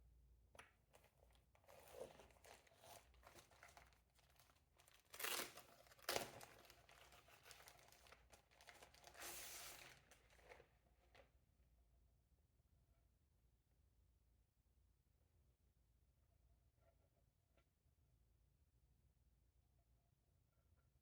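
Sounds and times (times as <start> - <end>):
packaging crinkling and tearing: 1.6 - 10.6.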